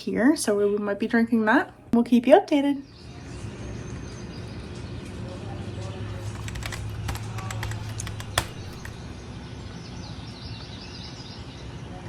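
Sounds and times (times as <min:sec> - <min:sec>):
light clicks: 0:06.2 - 0:09.0
sharp click: 0:06.3 - 0:09.0.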